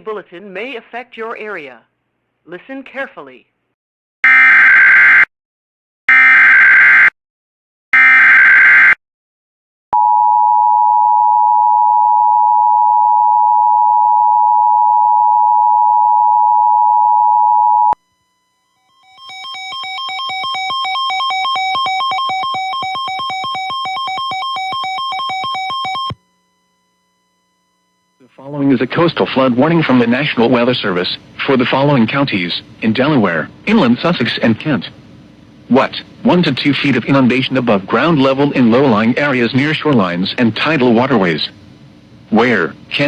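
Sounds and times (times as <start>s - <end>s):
two-tone attention signal: 17.8s - 28.2s.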